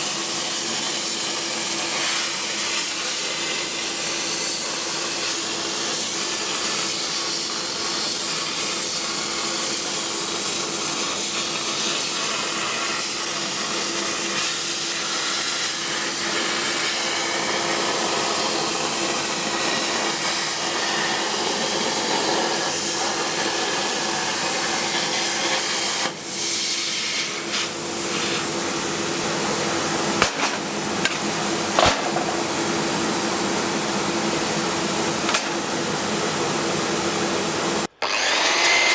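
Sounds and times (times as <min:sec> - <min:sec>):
workshop machine hissing and humming: 0:00.0 - 0:38.3
sharp knocks: 0:30.2 - 0:32.7, 0:35.2 - 0:35.9.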